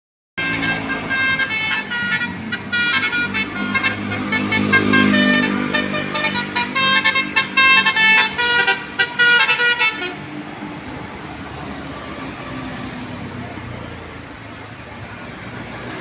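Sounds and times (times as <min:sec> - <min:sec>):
bus horn playing a tune: 0:00.4 - 0:10.3
bus engine running: 0:00.4 - 0:16.0
traffic noise: 0:00.4 - 0:16.0.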